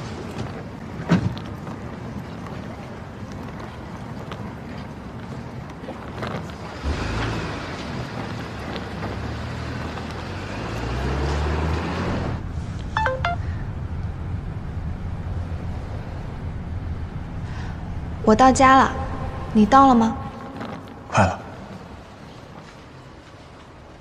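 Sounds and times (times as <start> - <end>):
car engine accelerating: 6.8 - 18.2.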